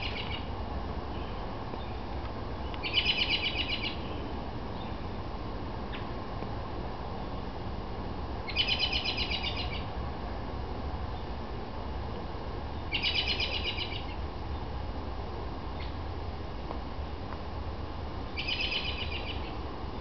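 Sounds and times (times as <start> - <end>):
bird trilling: 0.0 - 0.5, 2.8 - 4.1, 8.5 - 9.9, 12.9 - 14.2, 18.4 - 19.6.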